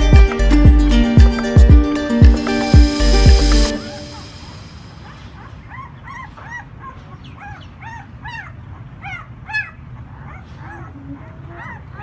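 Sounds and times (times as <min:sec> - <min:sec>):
puppies whining and yelping: 0:05.0 - 0:12.0.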